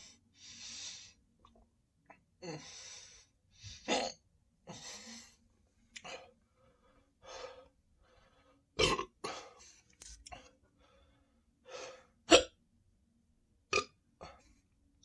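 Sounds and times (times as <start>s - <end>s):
breaths: 0.0s - 1.2s, 2.5s - 3.9s, 4.7s - 8.7s, 9.3s - 12.2s
small burps: 3.9s - 4.2s, 8.8s - 9.4s, 12.3s - 12.6s, 13.7s - 14.0s
person hiccuping: 8.8s - 9.1s, 12.3s - 12.6s.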